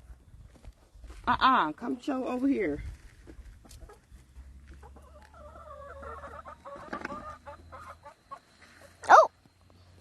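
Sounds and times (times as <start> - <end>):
hens clucking: 3.2 - 9.3.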